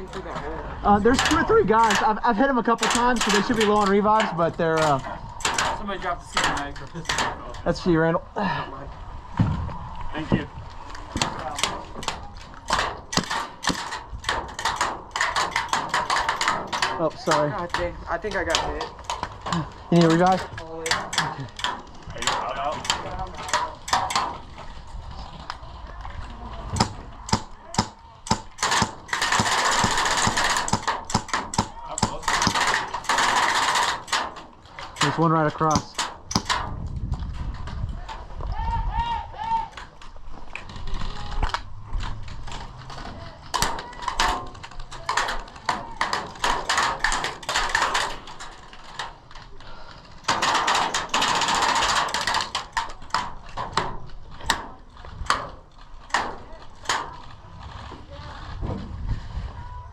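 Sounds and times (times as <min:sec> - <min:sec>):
airsoft gun full-auto fire: 0:26.8 - 0:34.3.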